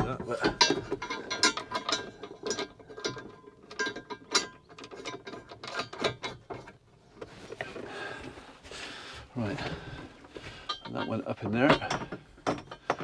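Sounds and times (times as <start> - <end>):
clicks and knocks of hand tools: 0.0 - 6.8, 10.4 - 13.0.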